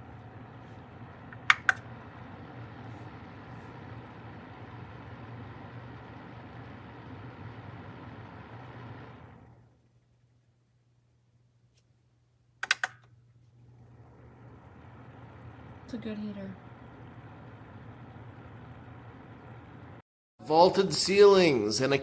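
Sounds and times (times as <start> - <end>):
heater fan running: 0.0 - 11.5, 12.3 - 22.0
sharp clicks: 1.3 - 1.9, 12.6 - 13.2.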